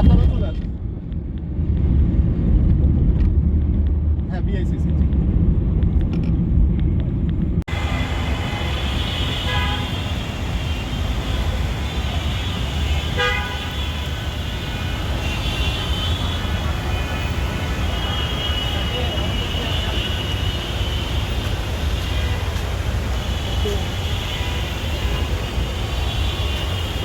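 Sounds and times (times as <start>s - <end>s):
road traffic: 0.0s - 27.0s
vehicle horns honking: 7.7s - 27.0s.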